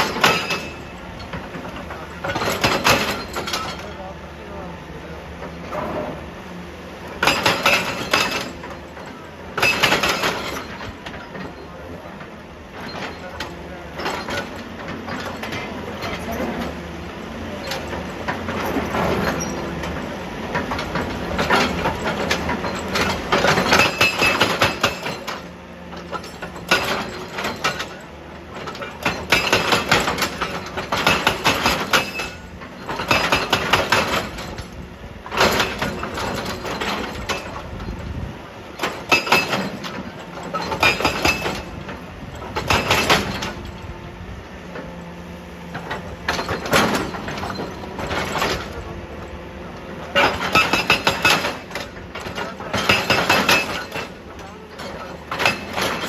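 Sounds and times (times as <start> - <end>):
excavator engine running: 0.0 - 56.0
loud rattling bursts on stone: 50.1 - 56.0.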